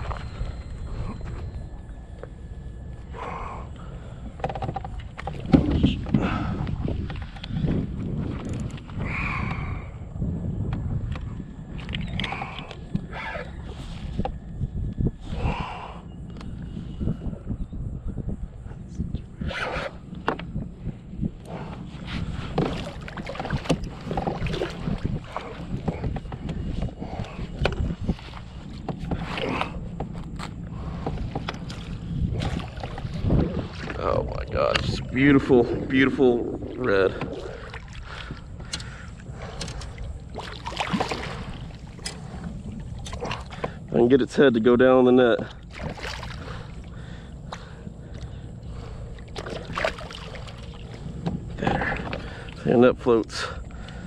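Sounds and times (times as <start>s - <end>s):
water sloshing around kayak: 0.0s - 17.6s, 18.4s - 54.0s
wind rumbling on microphone: 0.0s - 54.0s
knocks and scrapes on hull: 4.3s - 9.0s, 19.6s - 35.0s, 37.0s - 43.8s.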